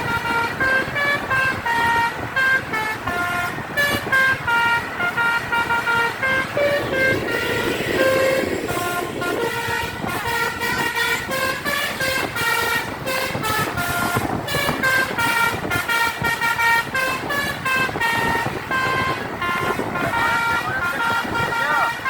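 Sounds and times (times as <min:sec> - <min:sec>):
bus horn playing a tune: 0:00.0 - 0:22.0
low rumble of bus: 0:00.0 - 0:22.0.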